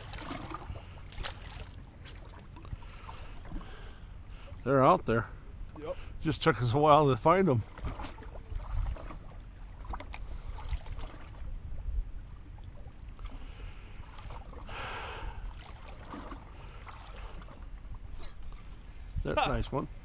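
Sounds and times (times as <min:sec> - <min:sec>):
wind rumble on microphone: 0:07.5 - 0:13.3, 0:19.0 - 0:20.0.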